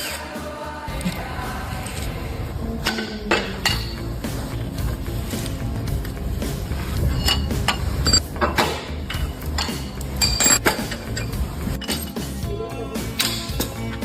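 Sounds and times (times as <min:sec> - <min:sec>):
background music: 0:00.0 - 0:14.0
tools clinking on metal: 0:02.8 - 0:04.0, 0:07.1 - 0:12.4.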